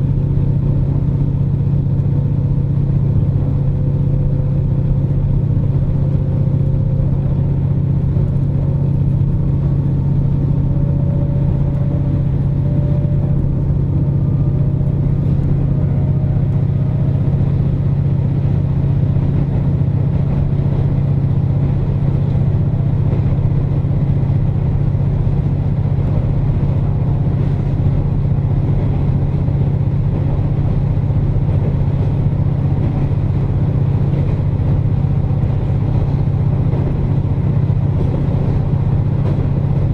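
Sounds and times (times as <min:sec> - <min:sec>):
diesel engine drone: 0:00.0 - 0:39.9
train running noise: 0:00.0 - 0:39.9
faint rising whine: 0:03.6 - 0:18.7.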